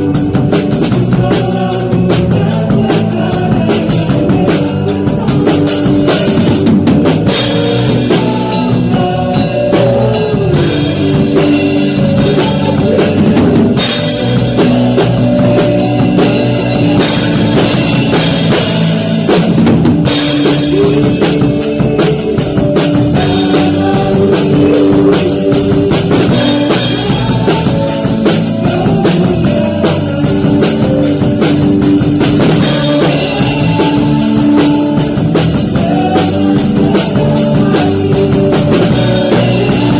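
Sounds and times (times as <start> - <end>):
drum kit: 0.0 - 39.9
worship band playing: 0.0 - 39.9.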